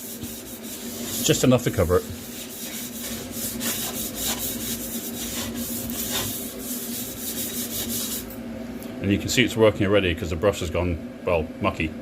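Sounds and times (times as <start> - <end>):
scratchy brush strokes on glass: 0.0 - 8.4
steady low hum: 0.0 - 12.0.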